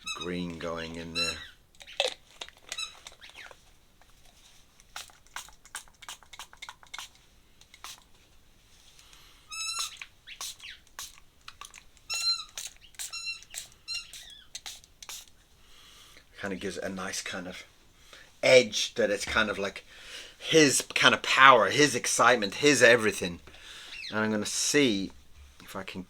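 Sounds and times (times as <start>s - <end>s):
short high squeaks: 2.7s - 3.6s, 9.5s - 10.8s, 12.1s - 14.5s.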